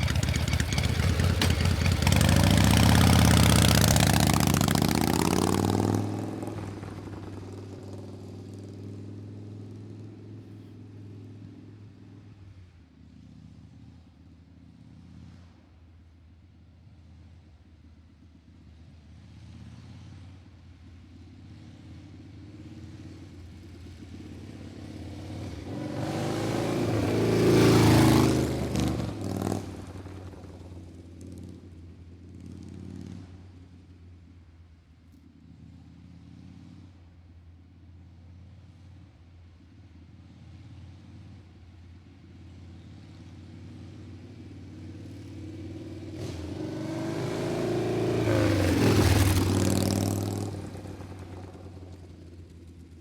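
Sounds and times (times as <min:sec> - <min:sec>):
vehicle engine passing by: 0:00.0 - 0:12.5, 0:21.5 - 0:33.7, 0:42.6 - 0:53.0
vehicle approaching: 0:00.0 - 0:15.8, 0:19.2 - 0:53.0.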